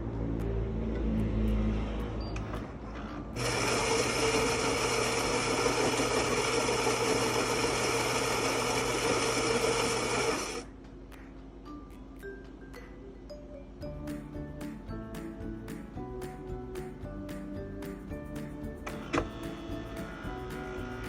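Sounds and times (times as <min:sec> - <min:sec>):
coffee machine motor running: 0:02.9 - 0:10.7, 0:18.8 - 0:21.0.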